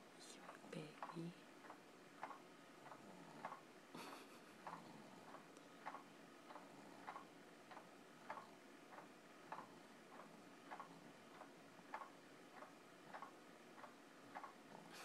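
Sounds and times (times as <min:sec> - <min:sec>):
clock ticking: 0:00.0 - 0:15.0.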